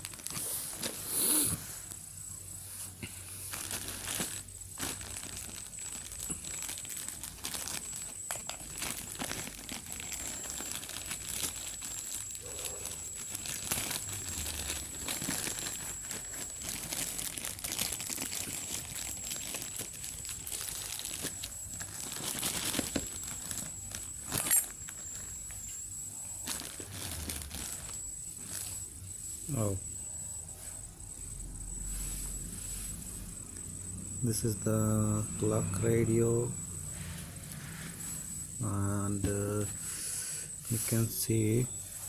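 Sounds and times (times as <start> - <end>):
packaging wrappers crinkling: 0.0 - 2.0, 3.4 - 25.8, 26.4 - 28.8.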